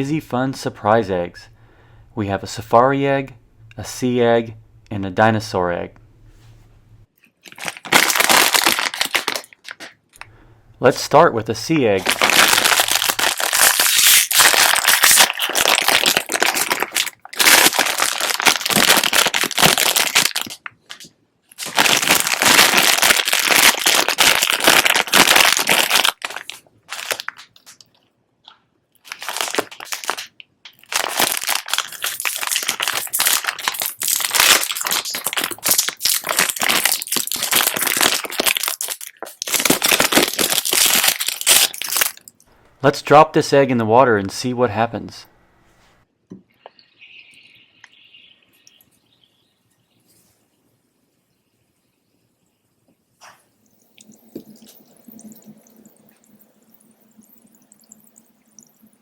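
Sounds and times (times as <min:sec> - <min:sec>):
wrapper crinkling: 0:07.3 - 0:10.1, 0:12.0 - 0:28.1, 0:29.0 - 0:42.4.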